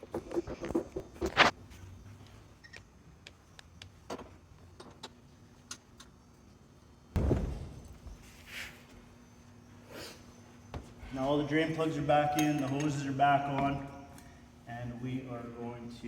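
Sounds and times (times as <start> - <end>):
heavy thump: 7.2 - 8.0
hand tools clinking on metal: 12.3 - 13.1.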